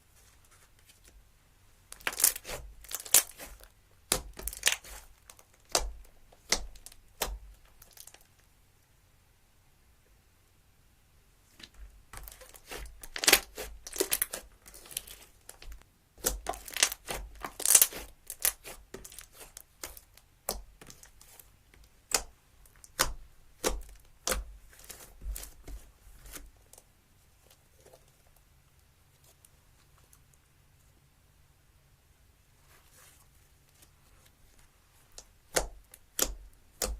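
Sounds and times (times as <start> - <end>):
slime crackling and popping: 2.0 - 8.3, 12.2 - 21.4.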